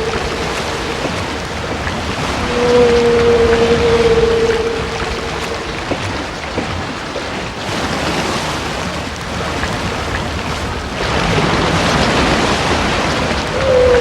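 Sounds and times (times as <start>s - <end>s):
humpback whale calls: 0.0s - 7.5s, 11.1s - 14.0s
ocean noise: 0.0s - 14.0s.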